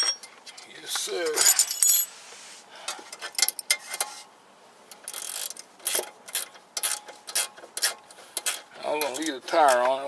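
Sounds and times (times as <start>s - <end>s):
wrench clicks and taps on metal: 4.9s - 10.0s.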